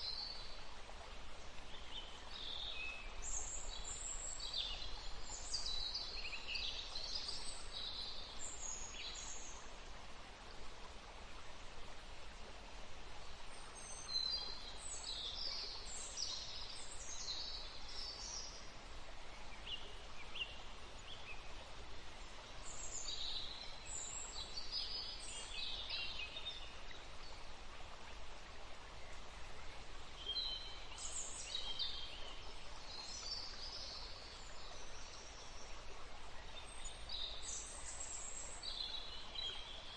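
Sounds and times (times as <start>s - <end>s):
songbird chirping: 28.0s - 39.9s.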